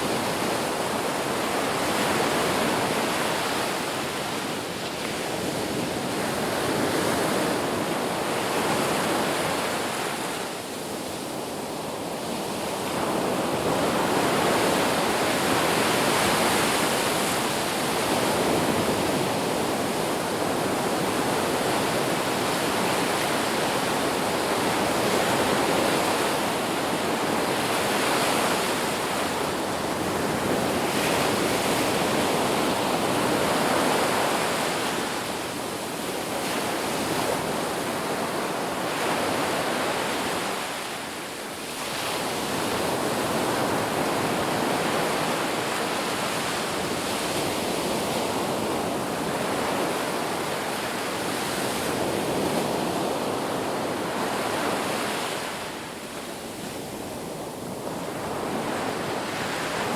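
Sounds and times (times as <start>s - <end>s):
ocean waves on a beach: 0.0s - 59.9s.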